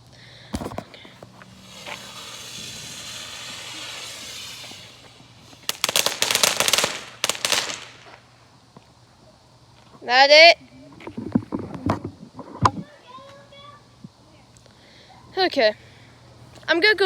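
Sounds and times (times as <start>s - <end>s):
firework fuse hissing: 0.0s - 9.0s
rapid firework pops: 0.5s - 8.3s.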